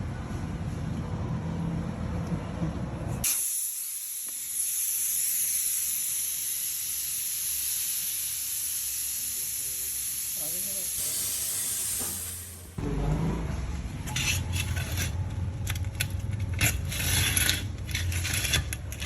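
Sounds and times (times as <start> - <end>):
compressed air hissing: 3.2 - 12.8.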